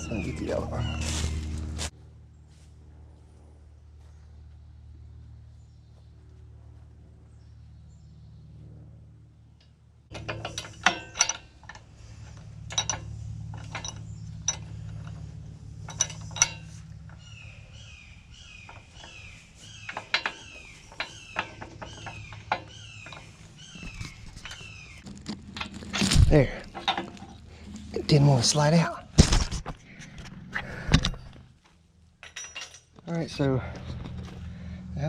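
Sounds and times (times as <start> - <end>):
steady low hum: 0.0 - 35.0
sharp metallic clinks and knocks: 9.6 - 31.5, 32.2 - 34.2
short squeaks: 10.1 - 27.4.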